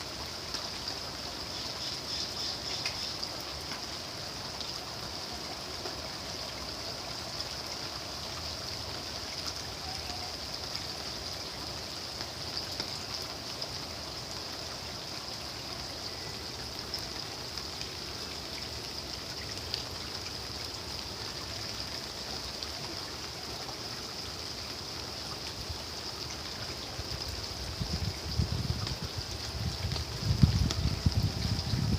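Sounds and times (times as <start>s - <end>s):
steady rain: 0.0s - 31.9s
water trickling and dripping: 0.0s - 31.9s.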